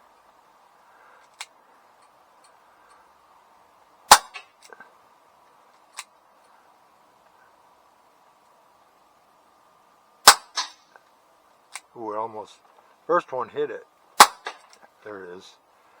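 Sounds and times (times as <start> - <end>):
air pistol shot: 4.1 - 4.4, 10.2 - 10.8, 14.2 - 14.6.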